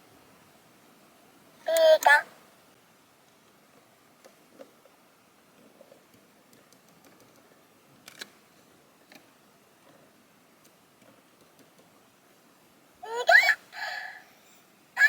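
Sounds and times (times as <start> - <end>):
faint small clicks: 5.6 - 8.4, 10.6 - 11.9.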